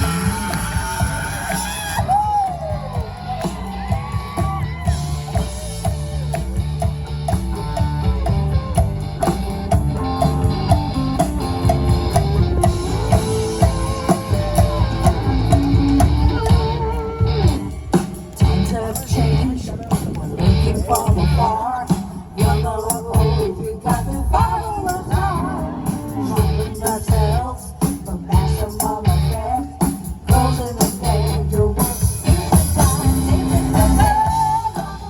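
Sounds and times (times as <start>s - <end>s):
drum kit steady beat: 0.0s - 35.0s
electric guitar: 0.0s - 35.0s.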